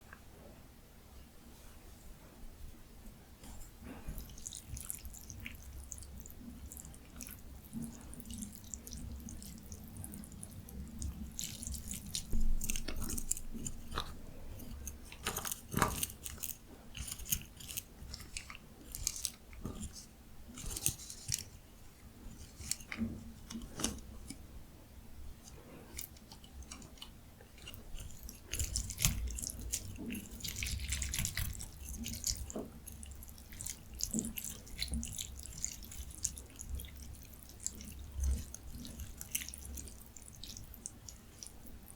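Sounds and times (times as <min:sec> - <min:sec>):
wet chewing and biting: 0:04.0 - 0:21.6, 0:25.3 - 0:41.9
crunchy wet clicks and smacks: 0:04.2 - 0:19.9, 0:25.5 - 0:41.9.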